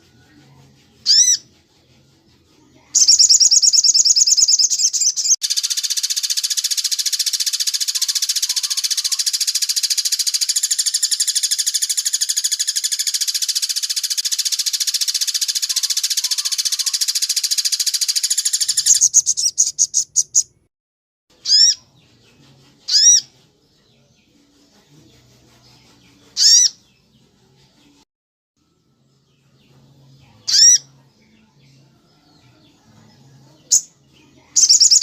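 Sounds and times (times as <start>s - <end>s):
bird trilling: 1.1s - 1.4s, 3.0s - 20.6s, 21.4s - 21.8s, 22.9s - 23.3s, 26.4s - 26.8s, 30.5s - 30.9s, 34.5s - 35.0s.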